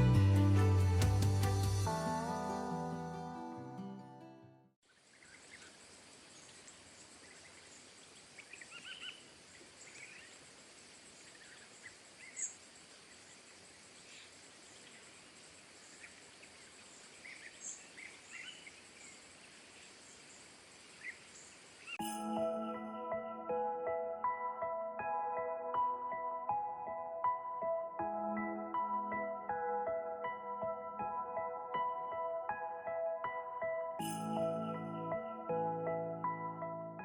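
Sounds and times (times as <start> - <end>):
steady hiss: 4.9 - 22.0.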